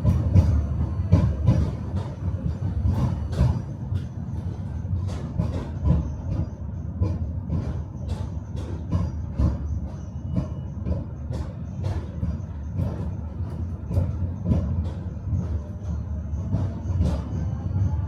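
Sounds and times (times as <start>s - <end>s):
tram rumbling on rails: 0.0s - 18.0s.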